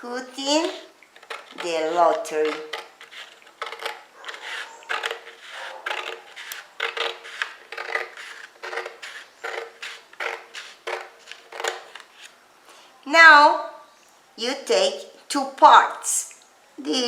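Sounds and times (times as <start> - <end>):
scissors snipping paper card: 0.4 - 12.3.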